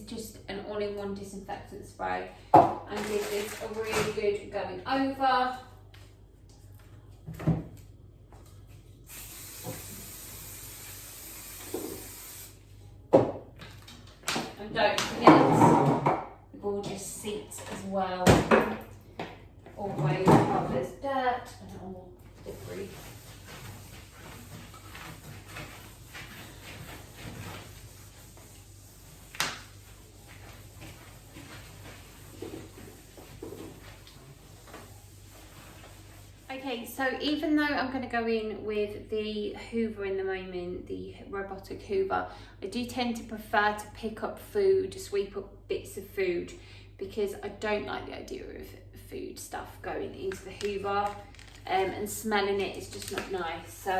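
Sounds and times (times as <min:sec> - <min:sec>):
spray bottle hissing mist: 0:09.1 - 0:12.6
cloth wiping furniture: 0:22.4 - 0:36.6.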